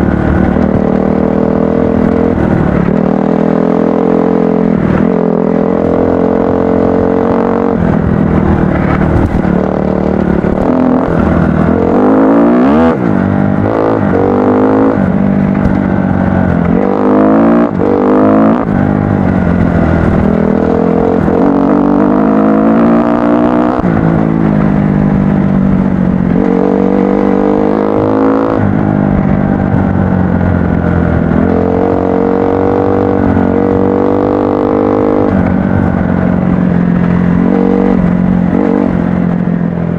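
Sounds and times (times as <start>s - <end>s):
dirt bike engine revving: 0.0s - 15.8s, 16.4s - 24.4s.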